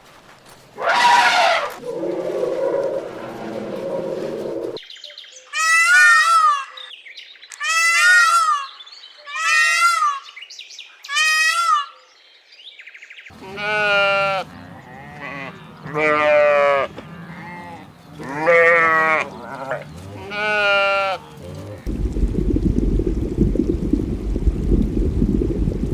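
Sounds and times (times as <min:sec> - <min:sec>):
quavering bleating: 0:13.3 - 0:21.9.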